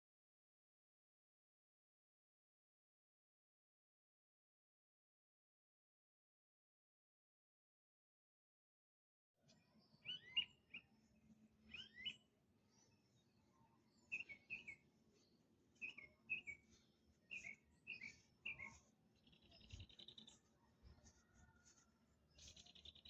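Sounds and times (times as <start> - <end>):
bird chirping: 9.4 - 23.0.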